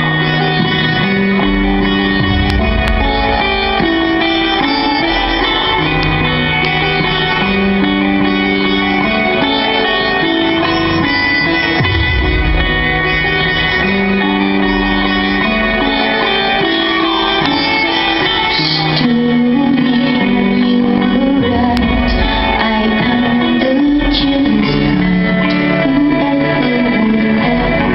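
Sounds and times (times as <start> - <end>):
guitar: 0.0 - 27.9
rock band playing live: 0.0 - 27.9
woman singing: 17.3 - 27.9.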